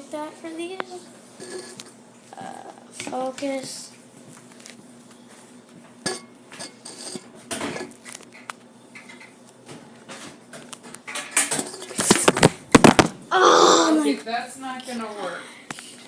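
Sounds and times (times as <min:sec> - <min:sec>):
dishes and kitchenware clattering: 0:01.4 - 0:01.9, 0:06.0 - 0:09.4, 0:10.1 - 0:12.5.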